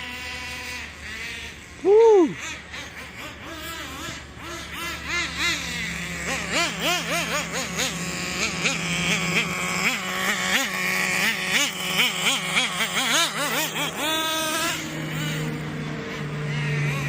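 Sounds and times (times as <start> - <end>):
rc car engine revving: 0.0 - 17.0.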